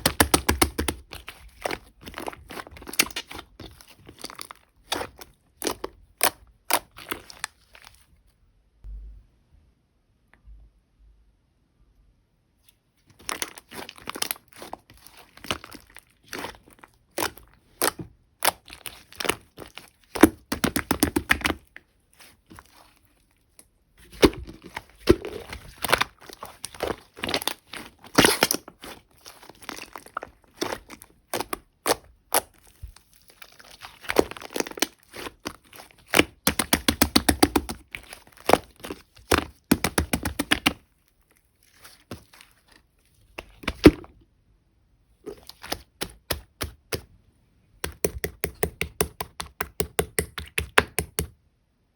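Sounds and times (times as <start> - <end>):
slime popping and crackling: 0.0 - 7.7, 13.2 - 23.0, 24.0 - 40.9, 45.3 - 47.0.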